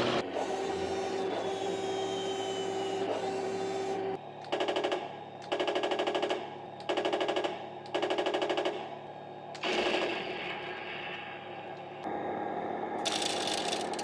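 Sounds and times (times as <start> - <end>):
steady mechanical noise: 0.0 - 14.0
machine-gun fire bursts: 4.5 - 8.9, 9.6 - 10.6.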